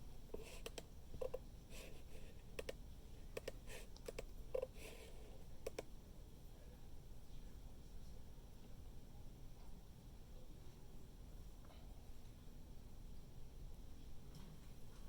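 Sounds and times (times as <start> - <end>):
keyboard key clicks: 2.6 - 2.8, 3.4 - 4.3, 5.6 - 5.8.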